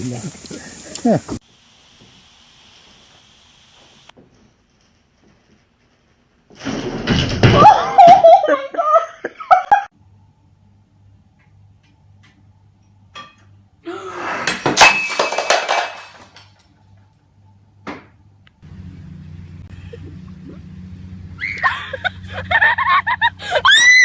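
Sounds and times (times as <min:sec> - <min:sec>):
objects falling with clattering crash: 0:04.2 - 0:08.4, 0:14.4 - 0:16.7.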